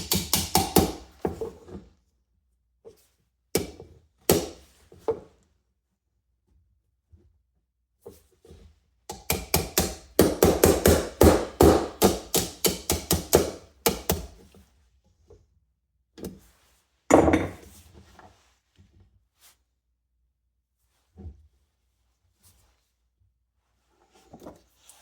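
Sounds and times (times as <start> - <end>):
sharp knocks on hard object: 17.1 - 17.6.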